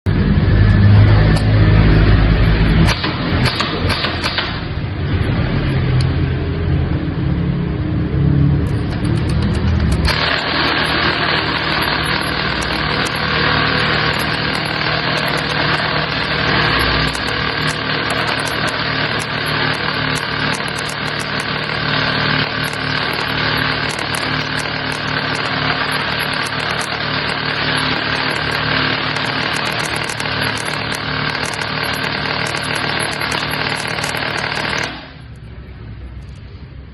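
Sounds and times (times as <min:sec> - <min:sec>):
airsoft gun firing full auto: 0:02.9 - 0:04.7, 0:09.8 - 0:35.2.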